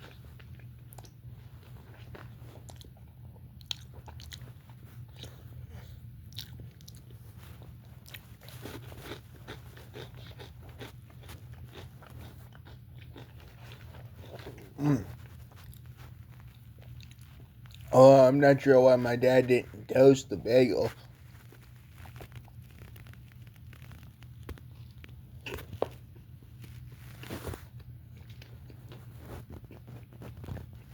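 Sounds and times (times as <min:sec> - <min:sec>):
chewing crunchy sandwich: 0:00.0 - 0:30.9
steady low hum: 0:00.0 - 0:30.9.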